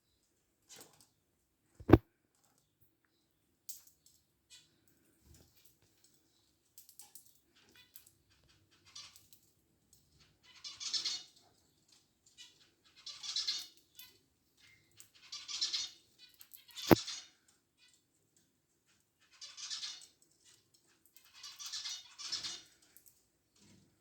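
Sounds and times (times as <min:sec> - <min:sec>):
small scratches and clicks: 0:01.8 - 0:02.6, 0:16.8 - 0:17.0.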